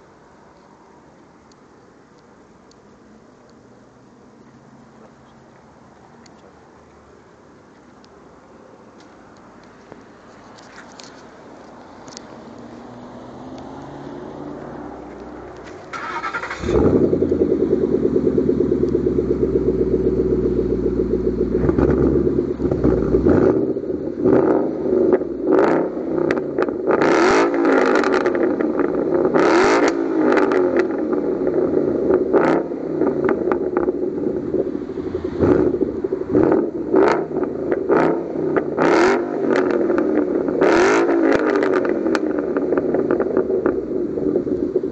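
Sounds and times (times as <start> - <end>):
engine starting and revving: 15.9 - 18.4.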